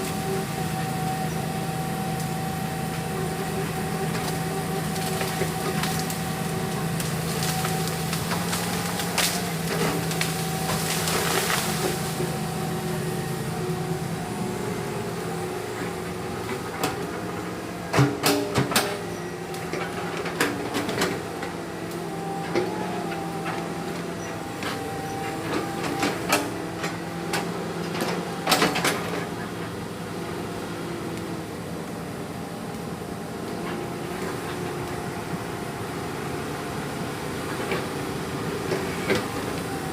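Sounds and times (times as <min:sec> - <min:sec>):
excavator diesel engine running: 0:00.0 - 0:39.9
knocks and clanks of logs: 0:17.9 - 0:21.6.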